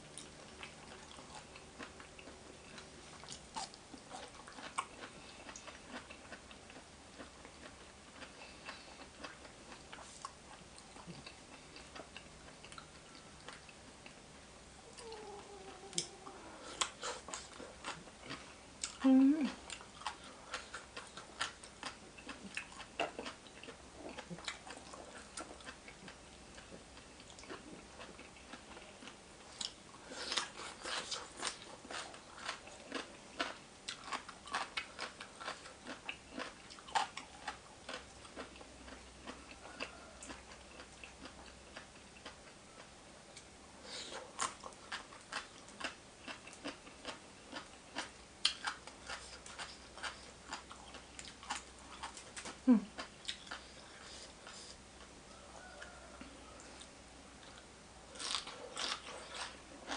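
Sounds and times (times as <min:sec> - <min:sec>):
person chewing and smacking: 0:00.1 - 0:14.2, 0:15.0 - 0:59.9.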